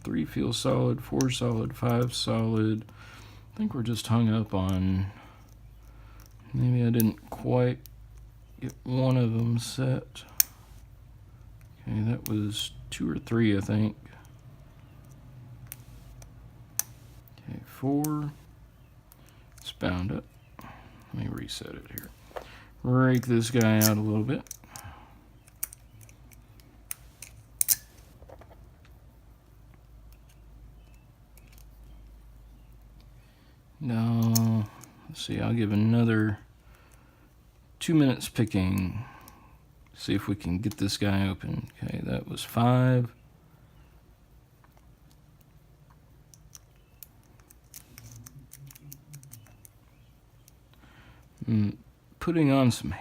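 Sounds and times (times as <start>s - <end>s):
lock picking metallic clicks: 23.1s - 28.1s, 46.2s - 51.4s
lock pick clicking in padlock: 25.4s - 28.0s.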